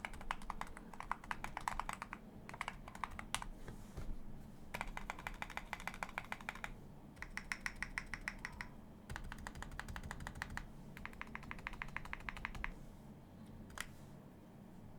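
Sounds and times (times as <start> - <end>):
keyboard typing: 0.0 - 3.6, 4.7 - 12.8, 13.7 - 14.0.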